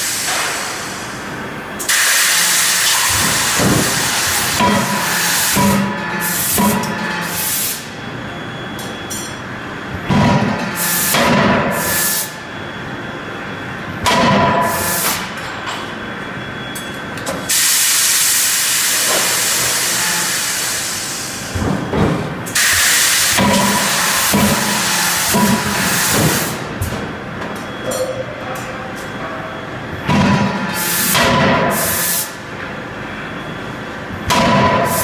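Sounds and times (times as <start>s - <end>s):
hiss of released air: 1.9s - 4.5s, 17.5s - 21.4s, 22.6s - 24.9s.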